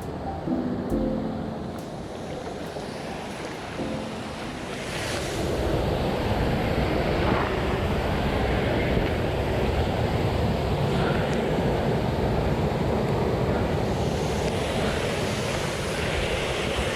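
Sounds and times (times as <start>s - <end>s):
stream water rushing: 0.0s - 8.2s.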